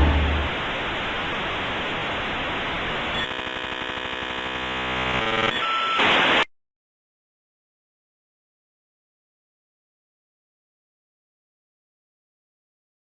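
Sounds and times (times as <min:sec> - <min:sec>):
steady electronic buzz: 0:00.0 - 0:00.6
electronic static hiss: 0:03.1 - 0:06.5.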